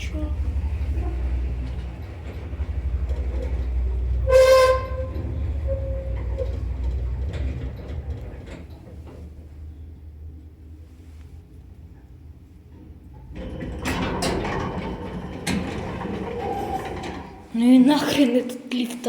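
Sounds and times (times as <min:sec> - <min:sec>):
elevator low rumble: 0:00.0 - 0:18.2
elevator high squeal: 0:00.5 - 0:07.8, 0:13.4 - 0:17.5.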